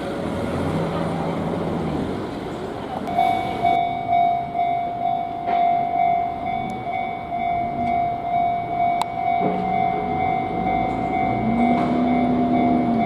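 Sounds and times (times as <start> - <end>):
level crossing warning bell: 3.0 - 13.0.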